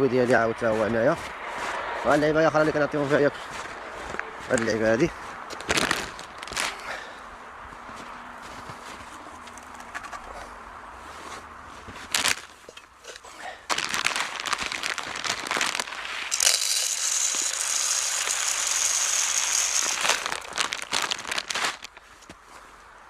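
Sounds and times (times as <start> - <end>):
crinkling and rustling handling noise: 2.6 - 22.9
steady hiss: 13.0 - 22.0.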